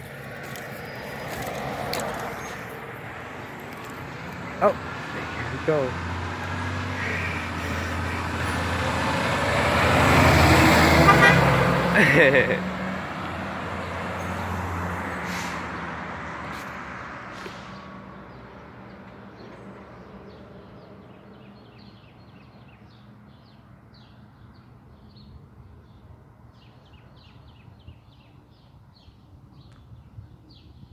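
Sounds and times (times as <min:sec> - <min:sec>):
small birds chirping: 0:00.0 - 0:08.9
fire engine running: 0:01.3 - 0:12.6.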